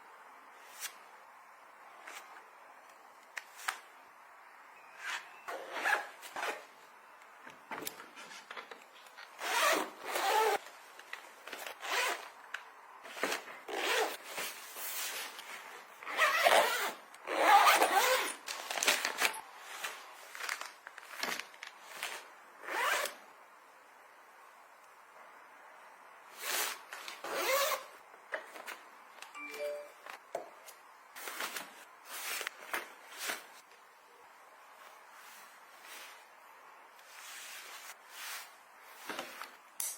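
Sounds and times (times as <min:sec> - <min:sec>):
zippers opening and closing: 0:05.0 - 0:06.7, 0:09.4 - 0:10.6, 0:11.8 - 0:12.3, 0:13.1 - 0:14.2, 0:16.0 - 0:19.4, 0:22.0 - 0:23.2, 0:26.4 - 0:27.9.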